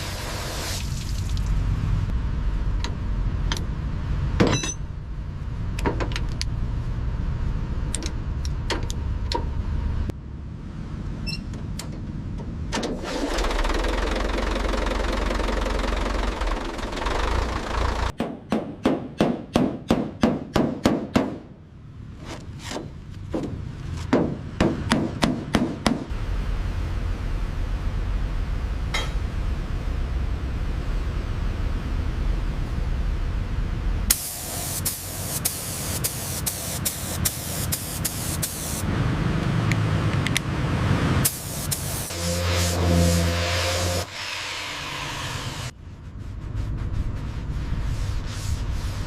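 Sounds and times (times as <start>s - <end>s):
low workshop rumble: 1.2s - 49.0s
rapid hammer strikes: 18.2s - 21.5s, 24.1s - 26.1s.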